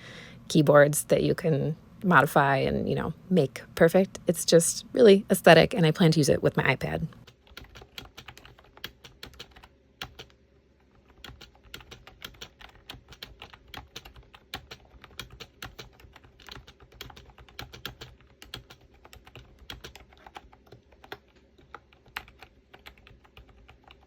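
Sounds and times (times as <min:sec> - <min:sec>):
mechanical keyboard typing: 0:07.2 - 0:10.4, 0:11.0 - 0:24.0.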